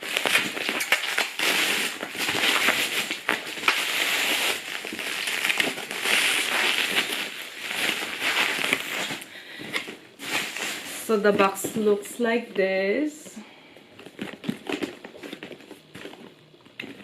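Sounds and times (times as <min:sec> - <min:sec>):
bubble wrap and paper crinkling: 0:00.0 - 0:12.1, 0:13.6 - 0:17.0.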